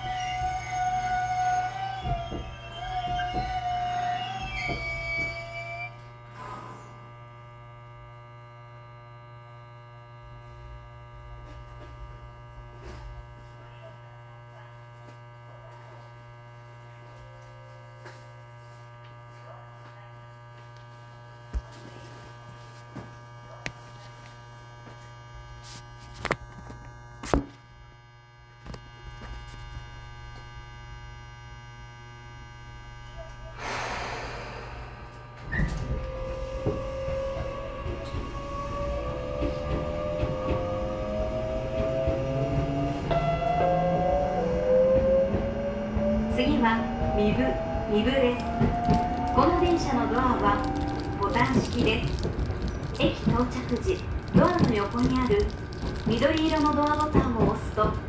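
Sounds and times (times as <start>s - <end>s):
train rumble: 0.0s - 6.9s, 32.8s - 58.0s
train electrical hum: 0.0s - 58.0s.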